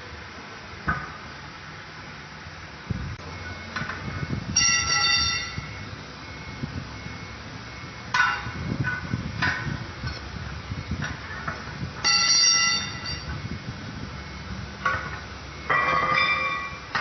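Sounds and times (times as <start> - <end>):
loud ringing tone: 3.3 - 8.8, 12.0 - 13.6, 15.5 - 16.9
metal clanks and knocks: 4.6 - 5.7, 8.1 - 10.2, 11.0 - 13.4, 14.8 - 17.0.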